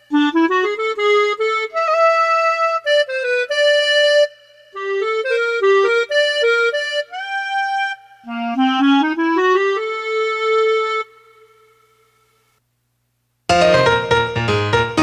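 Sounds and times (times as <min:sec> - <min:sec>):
sampled reed instrument melody: 0:00.0 - 0:11.2.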